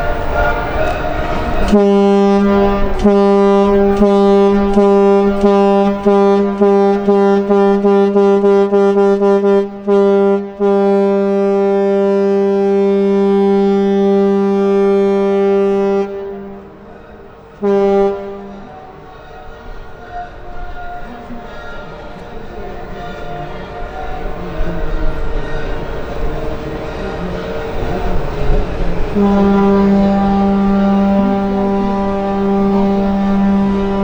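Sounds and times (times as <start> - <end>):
ship horn blasts: 0.0 - 34.0.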